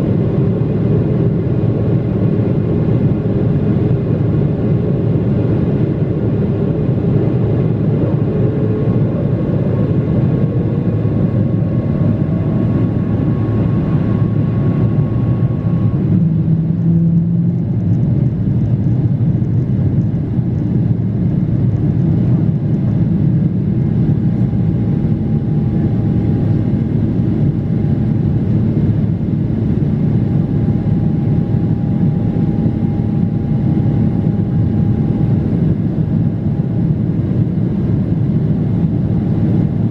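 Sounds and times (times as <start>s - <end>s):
jet engines roaring in cabin: 0.0s - 39.9s
faint whining tone: 8.0s - 20.8s, 21.6s - 37.4s.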